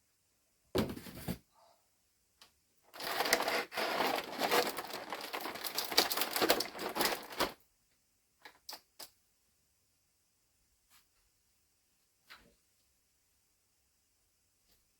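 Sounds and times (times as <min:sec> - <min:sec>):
packaging crinkling: 0:02.9 - 0:07.6.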